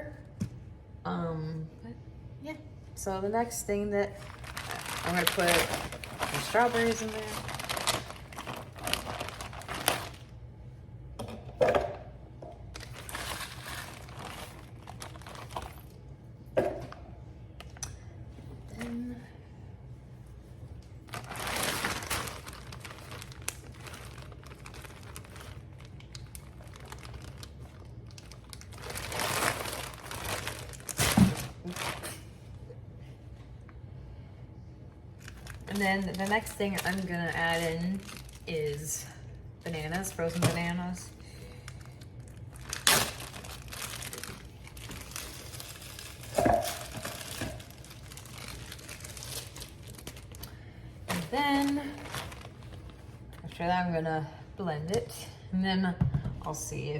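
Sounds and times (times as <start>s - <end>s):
plastic packaging crinkling: 4.1s - 10.3s, 12.7s - 16.0s, 21.0s - 32.3s, 35.2s - 38.9s, 39.6s - 53.4s.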